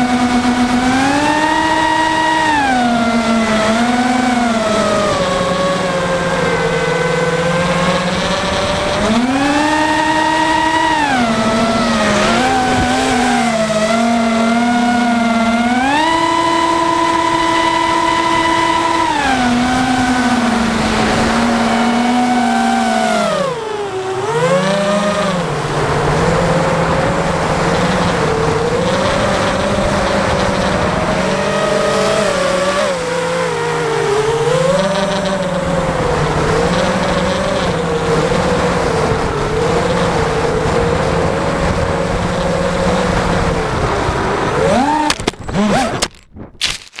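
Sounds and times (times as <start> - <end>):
electric motor and propeller whine: 0.0 - 46.2
wind rush: 11.2 - 14.2, 18.8 - 23.9.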